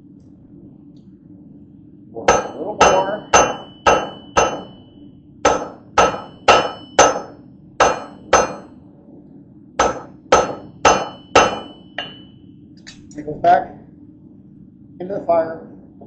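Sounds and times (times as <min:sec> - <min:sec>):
hammer ringing on anvil: 0:02.3 - 0:04.9, 0:05.5 - 0:08.7, 0:09.8 - 0:12.4.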